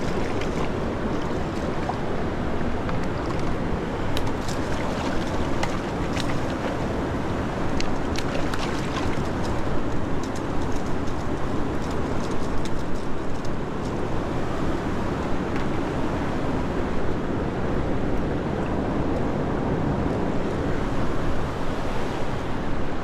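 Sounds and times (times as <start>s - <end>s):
small splashy ticks: 0.0s - 2.1s, 2.9s - 14.1s
river water flowing over rocks: 0.0s - 16.5s.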